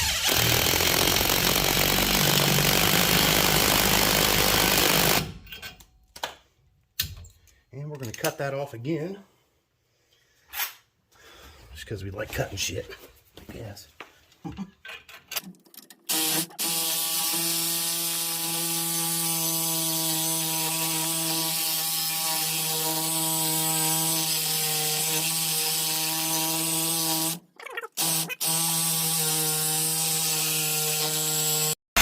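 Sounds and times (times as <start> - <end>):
reciprocating saw cutting metal: 16.1 - 32.0.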